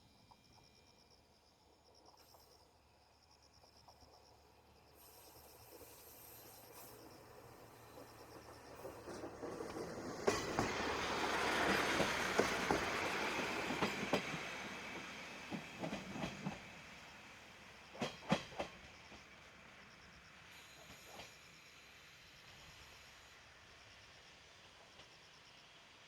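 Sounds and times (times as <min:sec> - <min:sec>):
diesel railcar running past: 0:00.0 - 0:26.0
wheels clacking over rail joints: 0:08.0 - 0:16.6.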